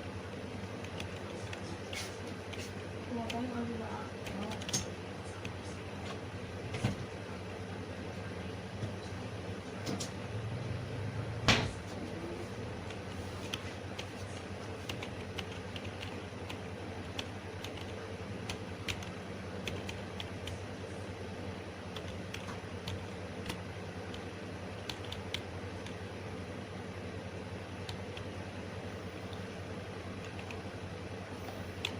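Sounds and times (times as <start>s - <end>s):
steady electrical hum: 0.0s - 31.9s
computer keyboard and mouse clicks: 0.7s - 2.6s, 4.2s - 5.6s, 12.8s - 20.6s, 21.9s - 26.0s, 30.2s - 30.6s.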